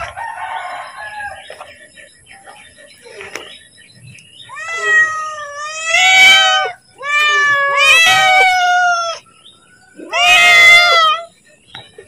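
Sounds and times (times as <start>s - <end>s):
cat meowing loudly: 4.5s - 9.2s, 10.0s - 11.3s.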